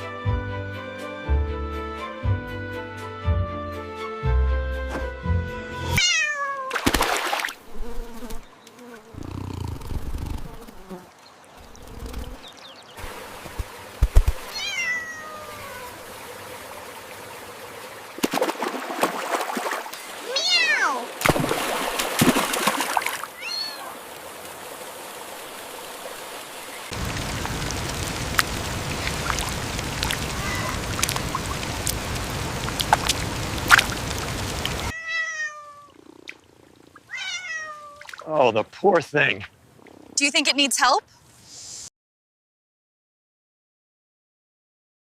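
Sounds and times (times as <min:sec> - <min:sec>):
cat meowing: 0:06.0 - 0:06.8, 0:14.5 - 0:15.9, 0:20.2 - 0:21.1, 0:23.4 - 0:24.0, 0:30.4 - 0:30.8, 0:34.9 - 0:36.2, 0:37.1 - 0:38.1.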